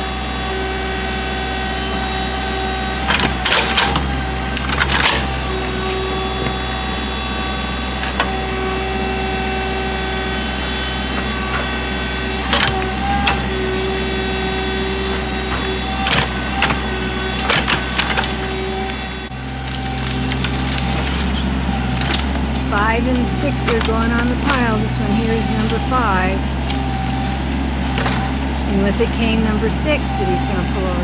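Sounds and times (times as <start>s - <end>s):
engine whine under load: 0.0s - 31.0s
excavator engine running: 0.0s - 31.0s
wood cracking and snapping: 2.9s - 6.8s, 15.6s - 29.1s.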